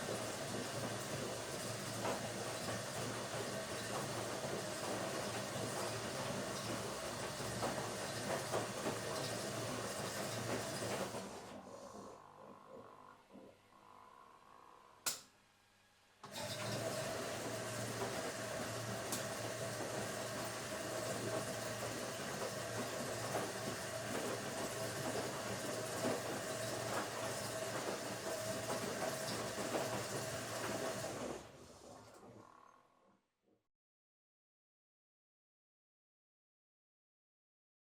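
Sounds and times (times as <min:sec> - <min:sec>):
washing machine humming and whirring: 0:00.0 - 0:33.3.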